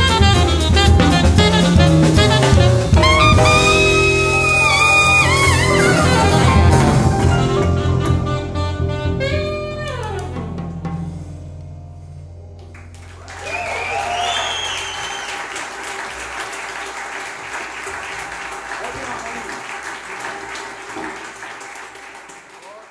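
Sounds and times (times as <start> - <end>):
jazz band playing: 0.0 - 13.7
audience applause: 12.7 - 22.9.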